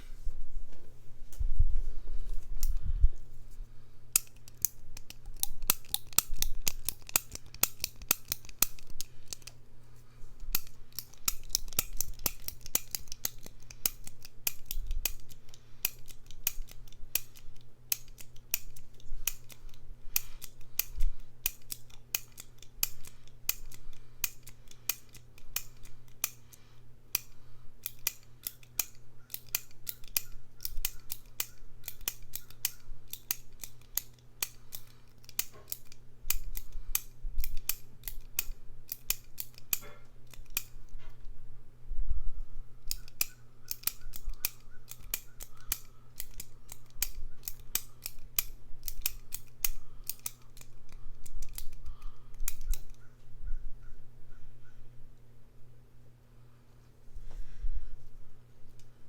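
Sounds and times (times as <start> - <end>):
rapid crisp clicking: 4.1 - 9.6.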